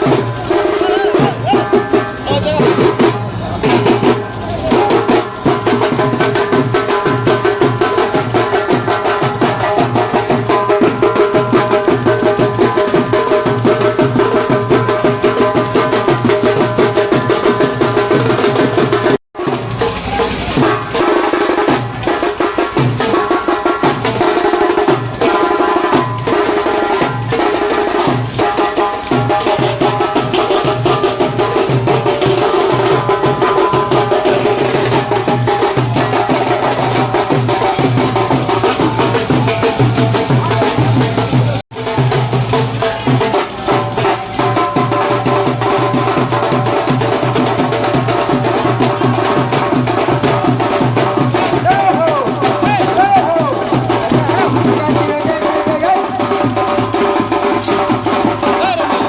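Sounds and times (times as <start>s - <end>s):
loud music with driving drum beat: 0.0s - 59.0s.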